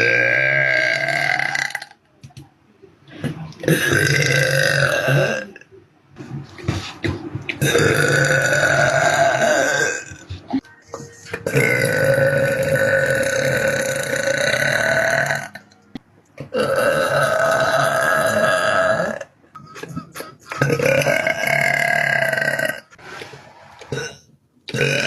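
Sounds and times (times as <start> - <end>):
woman burping: 0.0 - 2.0, 3.6 - 5.7, 7.6 - 10.2, 10.9 - 15.7, 16.4 - 22.9.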